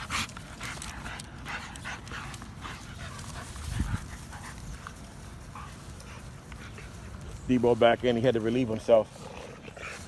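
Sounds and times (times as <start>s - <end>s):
dog panting: 0.0s - 7.4s.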